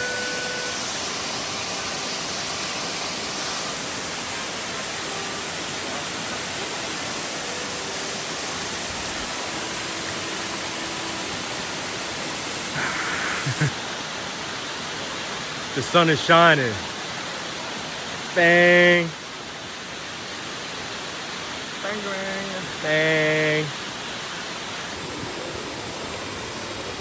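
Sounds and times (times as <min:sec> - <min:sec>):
waterfall rushing: 0:00.0 - 0:27.0.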